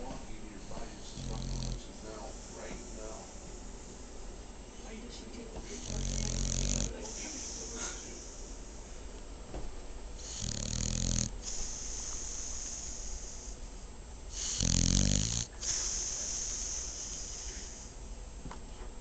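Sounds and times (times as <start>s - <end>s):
dog snoring: 1.0s - 3.3s, 5.7s - 8.0s, 10.2s - 13.3s, 14.3s - 17.8s
dog hissing breath: 5.6s - 9.0s, 10.2s - 18.0s.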